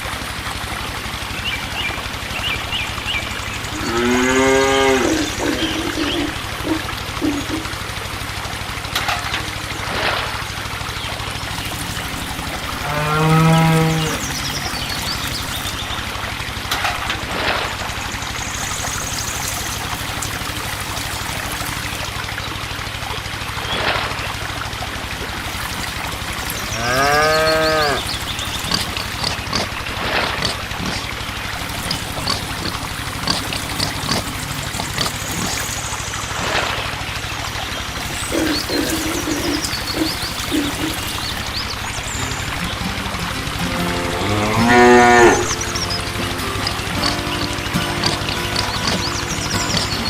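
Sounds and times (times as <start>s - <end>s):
cow mooing: 3.8s - 7.6s, 11.8s - 14.4s, 26.6s - 29.0s, 44.0s - 45.6s
steady low hum: 9.4s - 23.4s, 24.9s - 50.0s.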